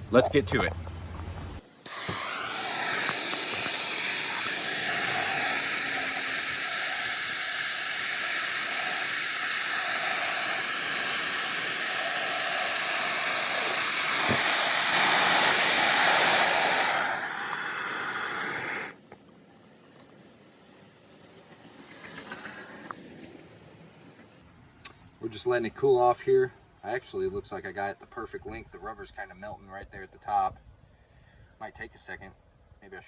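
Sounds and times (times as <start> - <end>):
gas torch flame hissing: 1.6 - 19.0.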